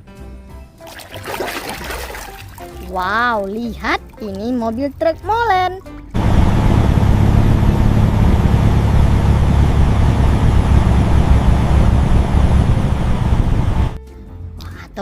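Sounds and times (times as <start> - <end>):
truck engine rumbling: 6.2 - 14.0.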